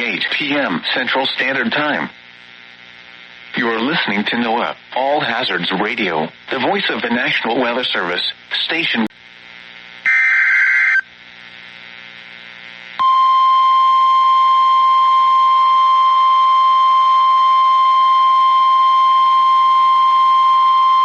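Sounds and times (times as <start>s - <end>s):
screechy digital data burst: 10.1s - 11.0s
steady warning alarm tone: 10.1s - 11.0s.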